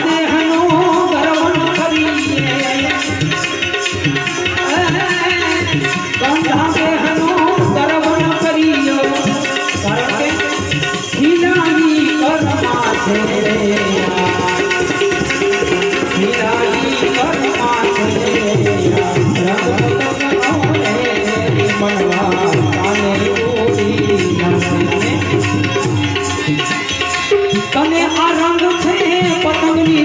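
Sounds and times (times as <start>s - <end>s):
harmonium melody: 0.0s - 30.0s
hand drums with pitch-bending bass: 12.4s - 27.7s.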